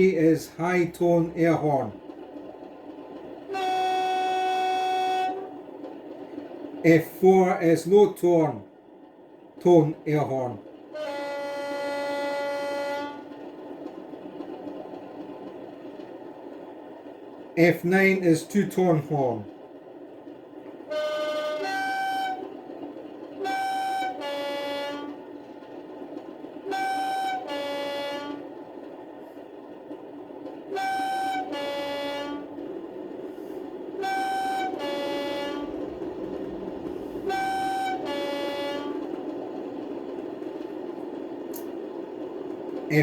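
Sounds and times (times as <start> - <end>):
two-tone model train horn: 3.5 - 5.6, 10.9 - 13.3, 20.9 - 22.5, 23.4 - 25.2, 26.6 - 28.5, 30.7 - 32.5, 34.0 - 35.8, 37.0 - 39.1
diesel engine rumble: 35.0 - 38.4.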